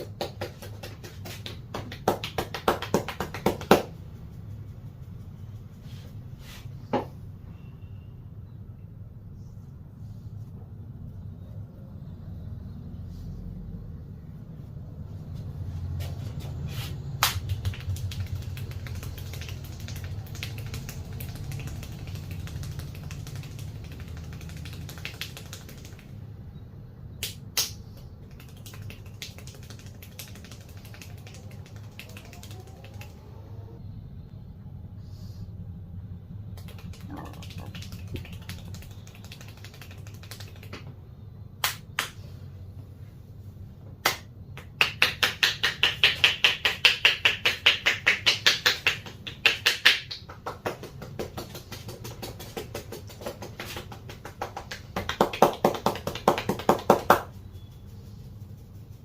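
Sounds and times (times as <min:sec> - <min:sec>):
steady low hum: 0:00.0 - 0:59.0
sharp snaps and clicks of hands: 0:17.2 - 0:26.2, 0:27.2 - 0:33.2, 0:36.5 - 0:40.9, 0:41.6 - 0:42.2, 0:44.0 - 0:57.3.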